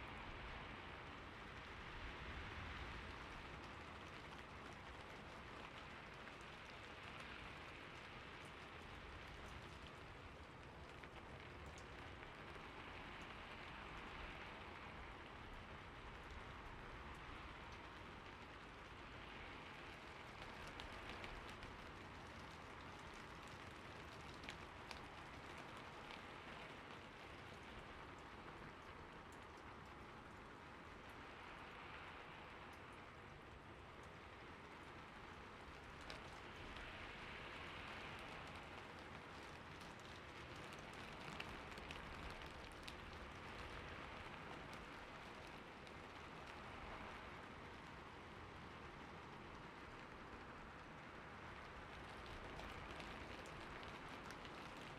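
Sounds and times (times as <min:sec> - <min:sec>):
water drips and splashes: 0:00.0 - 0:54.9.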